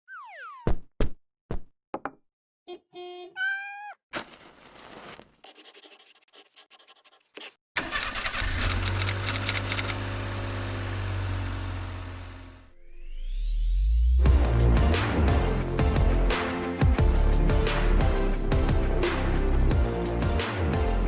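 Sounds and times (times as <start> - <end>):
short rising chirps: 0.0 - 0.7
car engine starting and idling: 7.8 - 12.6.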